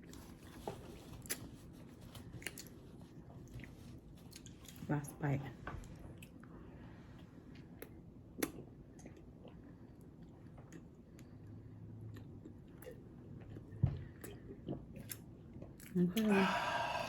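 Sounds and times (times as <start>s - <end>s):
person chewing cake: 0.0s - 4.9s, 7.4s - 17.0s.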